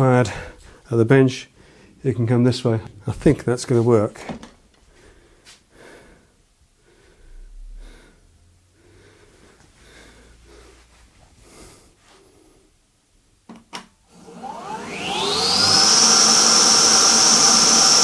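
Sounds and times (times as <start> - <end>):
breath-like puffs: 4.9 - 12.7.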